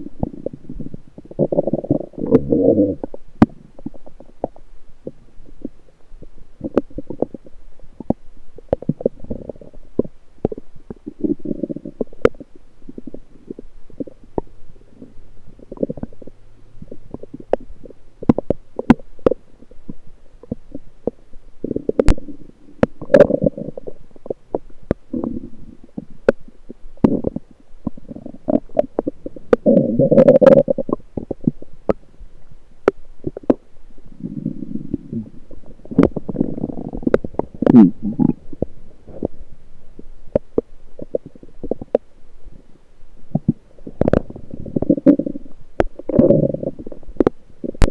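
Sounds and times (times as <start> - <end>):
intestinal bubbling gurgles: 0.0 - 32.0, 32.8 - 39.4, 43.3 - 47.9
intestinal pops and clicks: 16.9 - 22.2, 35.8 - 38.7, 43.3 - 47.9.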